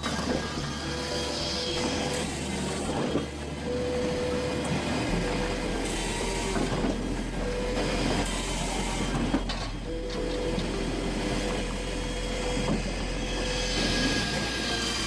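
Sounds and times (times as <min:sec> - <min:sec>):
firewood processor humming: 0:00.0 - 0:15.0.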